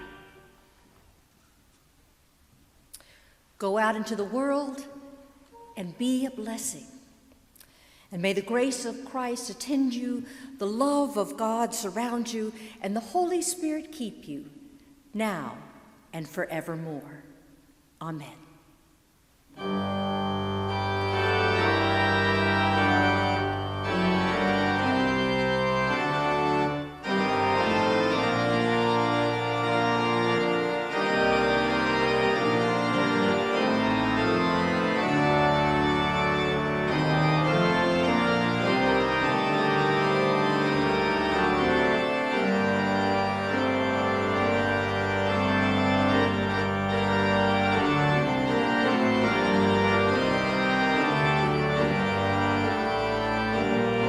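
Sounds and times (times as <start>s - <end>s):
church organ chords: 0.0s - 0.8s, 19.5s - 54.0s.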